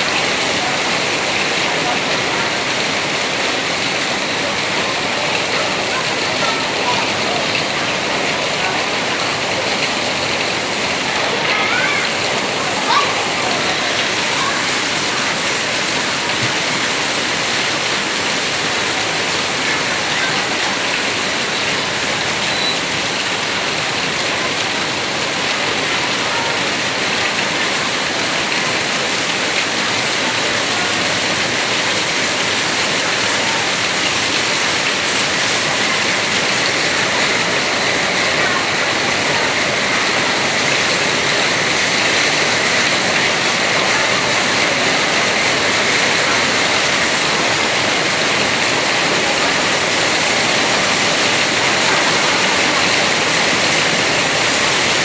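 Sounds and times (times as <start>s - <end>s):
heavy rain pouring: 0.0s - 55.0s.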